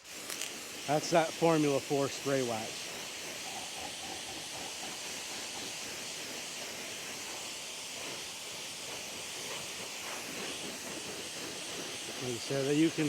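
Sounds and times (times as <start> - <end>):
water spray hissing: 0.0 - 13.0
water sheeting off surfaces: 9.4 - 13.0.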